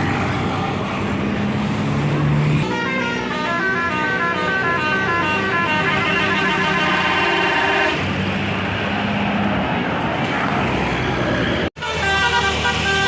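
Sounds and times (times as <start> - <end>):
bus engine running: 0.0 - 13.0
traffic noise: 0.0 - 13.0
musical air horn: 2.6 - 8.0, 11.8 - 13.0.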